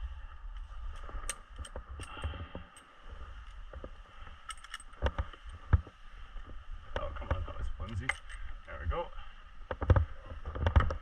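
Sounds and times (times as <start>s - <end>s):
climbing gear clinks and scrapes: 0.7s - 8.9s.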